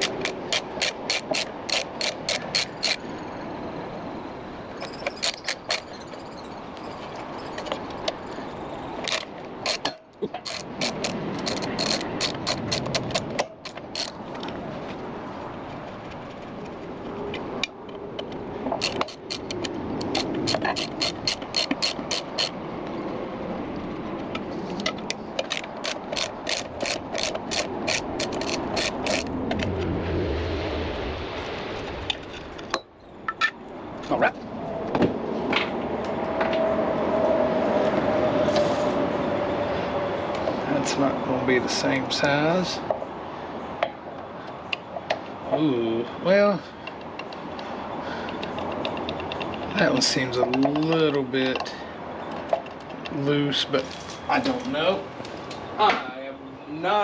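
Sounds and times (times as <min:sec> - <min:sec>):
socket ratchet clicking: 0:00.0 - 0:03.0, 0:09.0 - 0:14.2, 0:18.8 - 0:22.6, 0:25.4 - 0:29.3.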